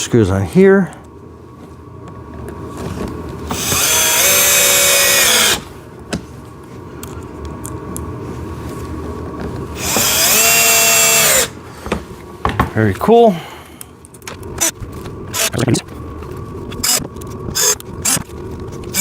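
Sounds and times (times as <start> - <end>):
cordless drill motor whining: 3.5 - 5.7, 9.8 - 11.6, 14.6 - 15.6, 16.7 - 19.0.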